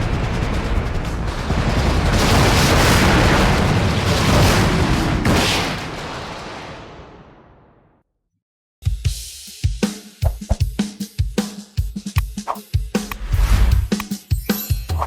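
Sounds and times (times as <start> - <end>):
explosions rumbling: 0.0 - 7.9, 13.1 - 13.9.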